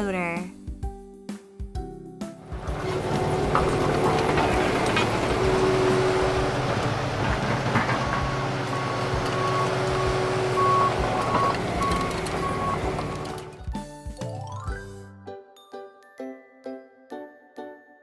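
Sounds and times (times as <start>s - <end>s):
diesel engine running: 2.4s - 13.7s
reversing beeper: 8.1s - 13.6s.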